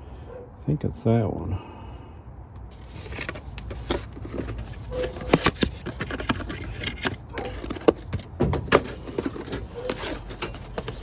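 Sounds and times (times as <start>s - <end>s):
small parts clicking and rattling: 2.8s - 11.0s.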